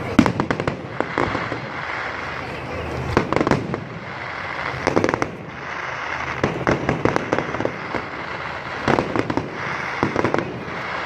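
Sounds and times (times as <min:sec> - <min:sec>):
distant firework bangs and crackle: 0:00.0 - 0:11.0
firework cracks and pops: 0:00.0 - 0:11.0.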